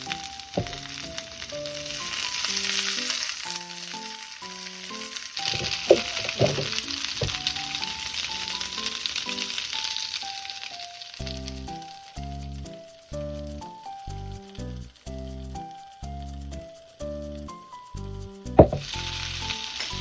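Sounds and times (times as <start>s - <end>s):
background music with melody: 0.0s - 20.0s
greens sizzling in a hot pan: 0.0s - 20.0s
utensil knocking on pan: 0.6s - 1.0s, 5.5s - 7.7s, 18.6s - 19.0s.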